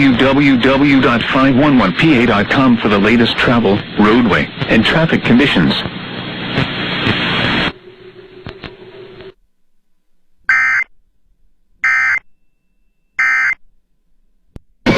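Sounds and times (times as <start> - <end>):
faint radio hiss: 0.0 - 11.8
low hum: 5.8 - 14.8
digital data tone bursts: 11.8 - 12.2.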